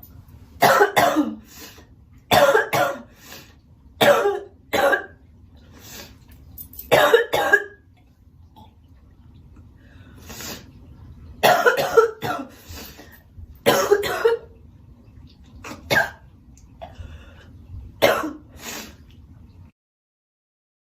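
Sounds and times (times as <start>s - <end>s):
girl coughing: 0.6s - 1.4s, 2.3s - 3.1s, 4.0s - 5.1s, 6.9s - 7.8s, 11.4s - 12.5s, 13.7s - 14.5s, 18.0s - 18.4s.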